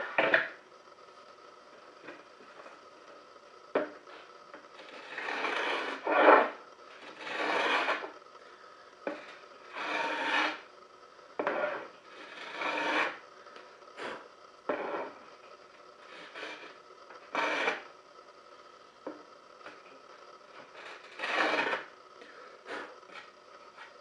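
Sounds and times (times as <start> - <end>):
wood being rasped: 4.8 - 8.1, 9.1 - 10.6, 11.4 - 13.2, 16.1 - 17.9, 20.7 - 21.9.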